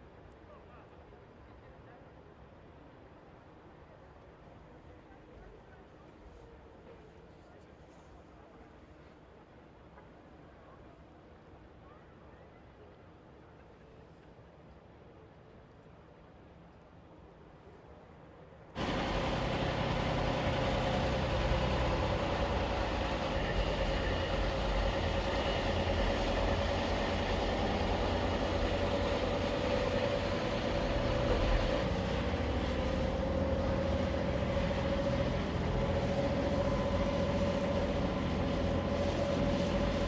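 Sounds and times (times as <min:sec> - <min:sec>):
steady whine: 0:18.8 - 0:40.0
truck engine and road rumble: 0:18.8 - 0:40.0.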